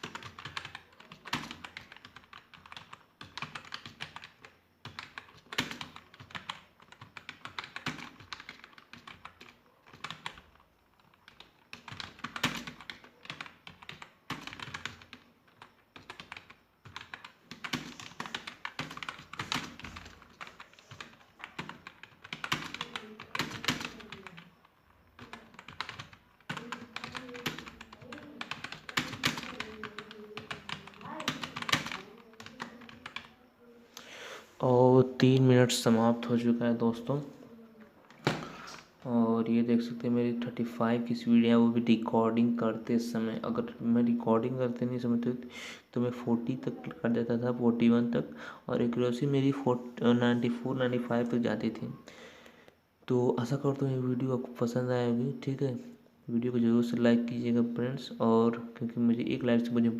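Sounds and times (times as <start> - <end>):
fast typing on keyboard: 0.0 - 24.5, 25.1 - 33.4.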